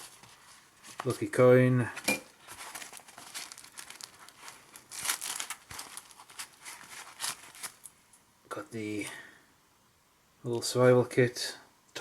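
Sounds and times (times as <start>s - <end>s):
crinkling and rustling of packets: 0.0s - 8.0s.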